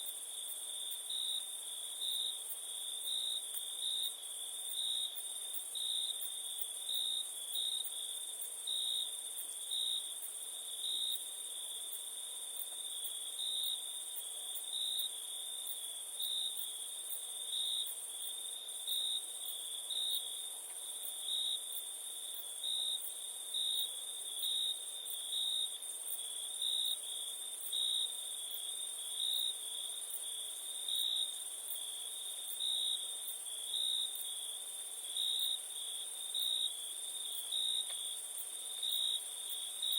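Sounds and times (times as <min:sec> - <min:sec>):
crickets chirping: 0:10.6 - 0:39.9.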